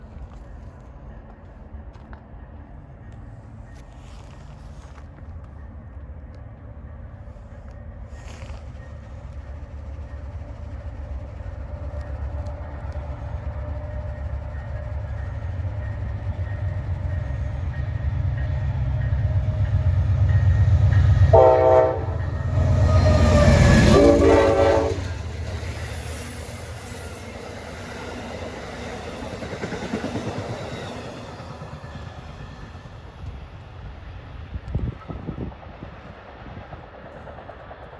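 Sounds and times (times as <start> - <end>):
diesel locomotive engine rumble: 0.0 - 37.9
train horn blasts: 17.8 - 25.8.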